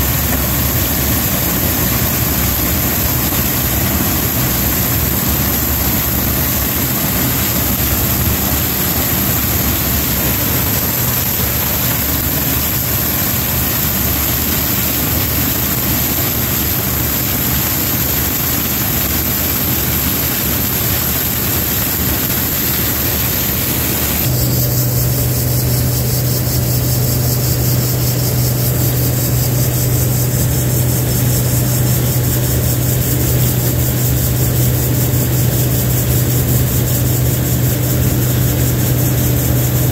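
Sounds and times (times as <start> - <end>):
low hum: 0.0 - 12.9, 23.9 - 39.9
combine harvester engine running: 0.0 - 39.9.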